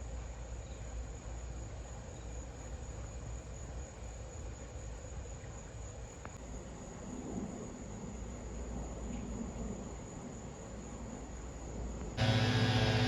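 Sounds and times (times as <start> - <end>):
crickets chirring: 0.3 - 13.0
low rumble: 12.2 - 13.0.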